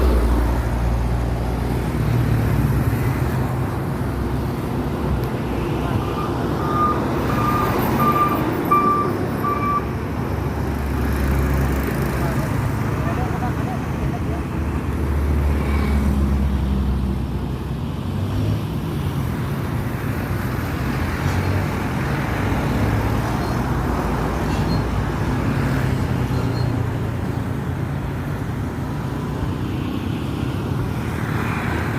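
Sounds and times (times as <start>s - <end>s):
diesel engine rumbling: 0.0s - 15.4s
machinery and road noise: 0.0s - 31.9s.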